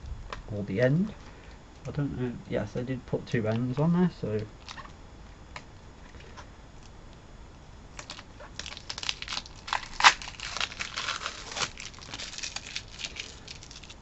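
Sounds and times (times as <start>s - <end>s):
packaging crinkling and tearing: 7.9s - 14.0s.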